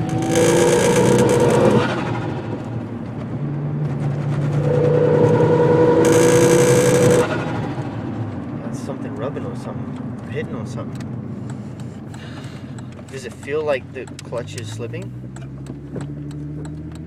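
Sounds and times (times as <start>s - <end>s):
loud rubbing drone: 0.0s - 2.7s, 4.0s - 8.1s
car engine running: 0.0s - 17.0s.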